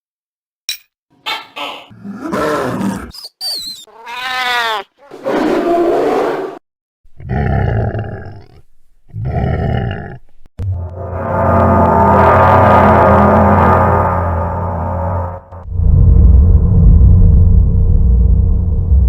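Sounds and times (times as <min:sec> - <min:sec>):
dragon roars and growls: 0:01.9 - 0:03.1, 0:05.1 - 0:06.6, 0:07.2 - 0:10.2.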